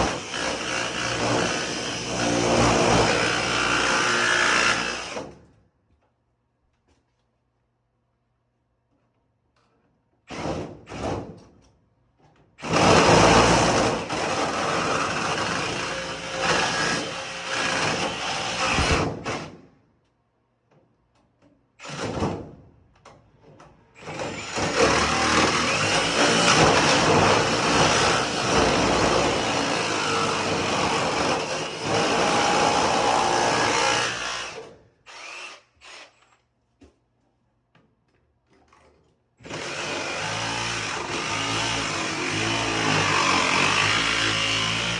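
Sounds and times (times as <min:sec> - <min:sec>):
jigsaw cutting sheet metal: 0:00.0 - 0:05.3, 0:12.6 - 0:19.6, 0:24.0 - 0:36.4, 0:39.4 - 0:44.9.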